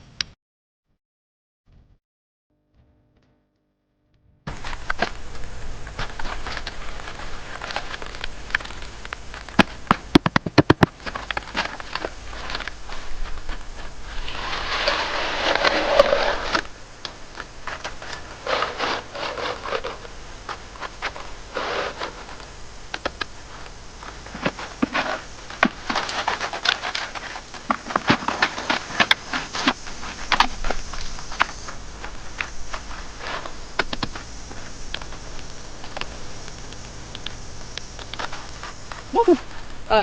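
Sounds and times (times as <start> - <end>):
rasping scrape: 4.5 - 34.8
scraping on wood: 4.5 - 36.6.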